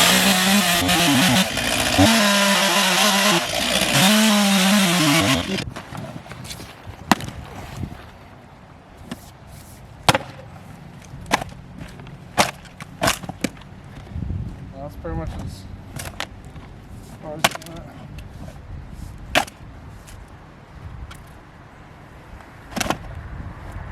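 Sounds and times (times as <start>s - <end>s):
chainsaw cutting wood: 0.0s - 7.3s.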